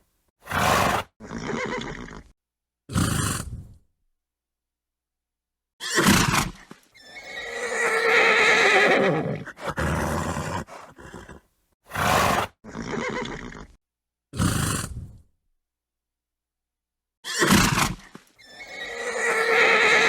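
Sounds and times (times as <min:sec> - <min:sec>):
horse snorting: 0:00.4 - 0:02.3, 0:02.9 - 0:03.8, 0:06.0 - 0:13.8, 0:14.4 - 0:15.2
horse neighing: 0:00.5 - 0:02.3, 0:07.0 - 0:11.4, 0:12.0 - 0:13.8, 0:18.4 - 0:20.0.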